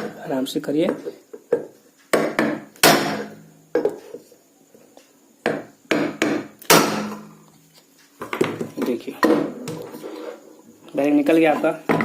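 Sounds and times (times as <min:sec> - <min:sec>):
metal-on-metal blows ringing: 0:02.3 - 0:03.5, 0:06.0 - 0:07.3.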